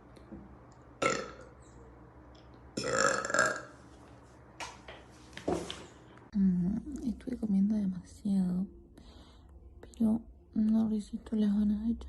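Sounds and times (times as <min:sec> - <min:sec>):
woman burping: 0:01.0 - 0:01.5, 0:02.8 - 0:03.7.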